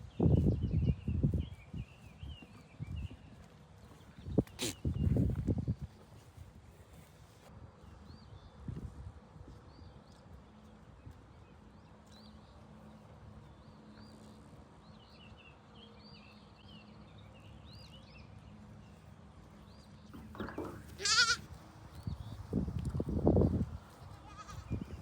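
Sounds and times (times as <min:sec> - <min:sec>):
goat bleating: 0:20.2 - 0:21.5, 0:24.1 - 0:24.9.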